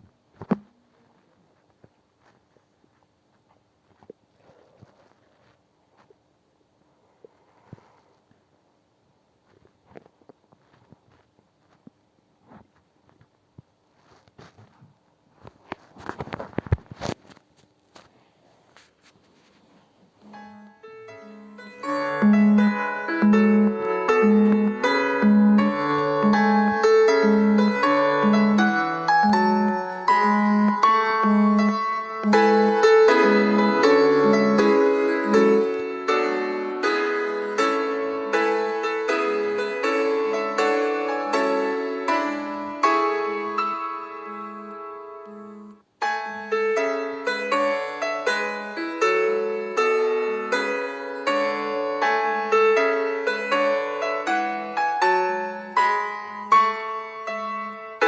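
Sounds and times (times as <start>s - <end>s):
piano melody ringtone: 20.2s - 58.0s.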